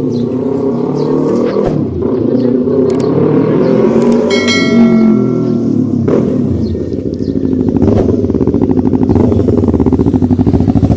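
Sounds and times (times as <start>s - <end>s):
motorcycle engine idling: 4.3s - 10.9s.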